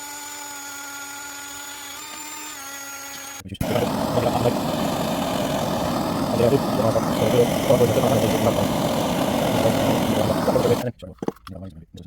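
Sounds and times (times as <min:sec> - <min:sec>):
electric machine whine: 0:03.6 - 0:10.8
gas torch roaring: 0:03.6 - 0:10.9.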